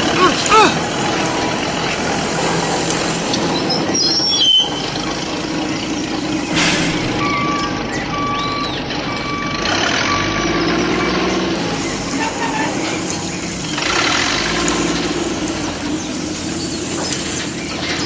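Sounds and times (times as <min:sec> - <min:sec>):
vehicle engine running: 0:00.0 - 0:18.0
high reversing beeps: 0:06.5 - 0:11.3.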